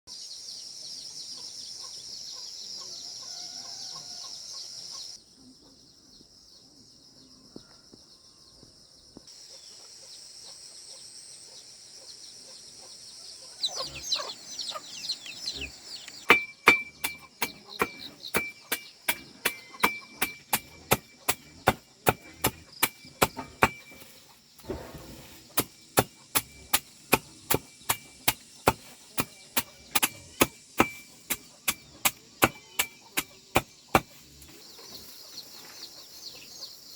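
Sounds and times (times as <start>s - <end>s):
chickens clucking: 13.4s - 16.3s
axe chopping wood: 16.2s - 34.2s.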